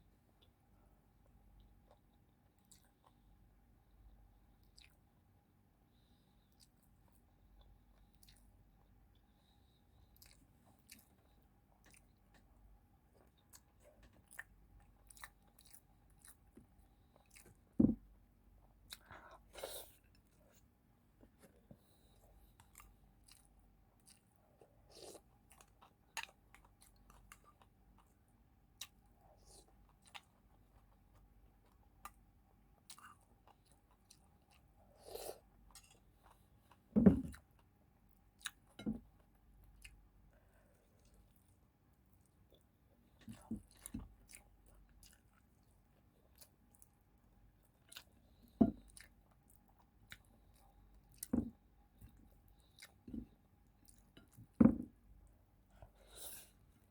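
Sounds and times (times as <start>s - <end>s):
person chewing food: 1.6s - 3.3s, 4.6s - 5.0s, 6.0s - 18.0s, 18.7s - 32.2s, 32.8s - 56.9s
dull thump: 17.8s - 18.0s, 37.0s - 37.3s, 54.6s - 54.9s.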